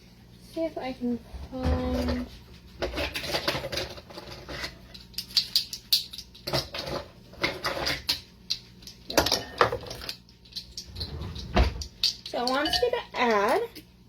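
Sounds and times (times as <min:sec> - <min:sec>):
kitchen items rummaged through: 0:01.3 - 0:05.1, 0:09.1 - 0:13.6.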